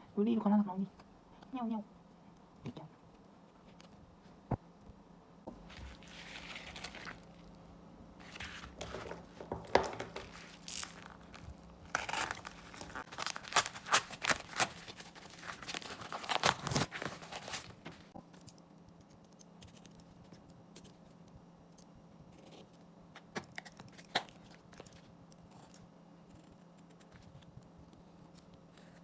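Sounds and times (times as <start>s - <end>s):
packaging crinkling and tearing: 5.5s - 18.2s.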